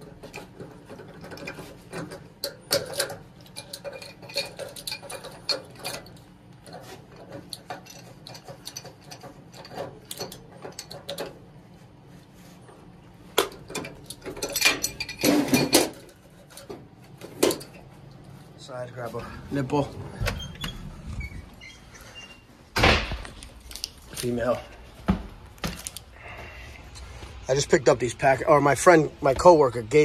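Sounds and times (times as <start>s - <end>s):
metal tools clicking and clanking: 0.0s - 11.4s, 13.3s - 18.3s
loud knocks and rattling: 22.7s - 23.4s.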